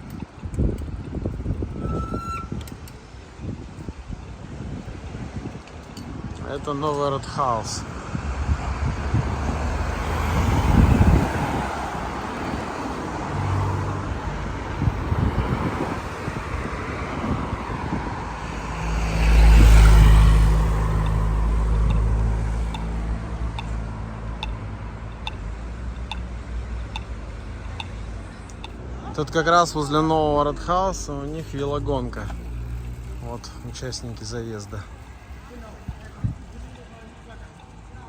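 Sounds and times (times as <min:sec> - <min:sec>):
street traffic: 0:00.0 - 0:38.0
vehicle passing close: 0:07.4 - 0:38.0
light ticks: 0:21.8 - 0:23.8, 0:26.9 - 0:28.8.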